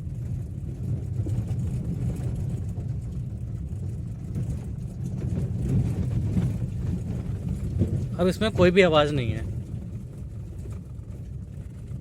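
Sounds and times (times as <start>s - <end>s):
car driving on rough road: 0.0s - 12.0s.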